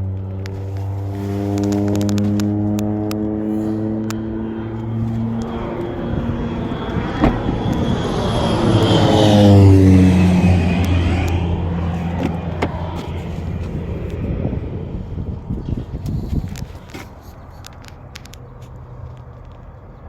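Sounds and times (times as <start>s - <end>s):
small aircraft engine drone: 0.0s - 20.0s.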